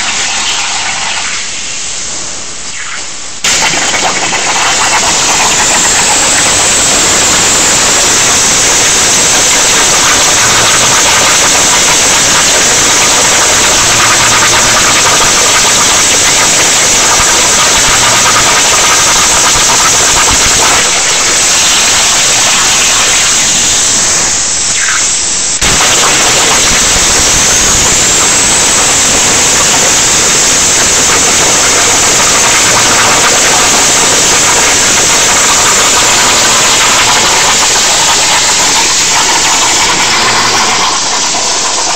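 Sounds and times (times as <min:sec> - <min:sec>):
plasma cutter torch hissing: 0:00.0 - 0:41.9.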